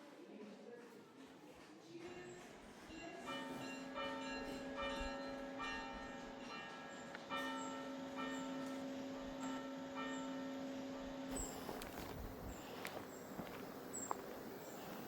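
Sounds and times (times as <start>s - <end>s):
church bells ringing: 2.9s - 13.5s.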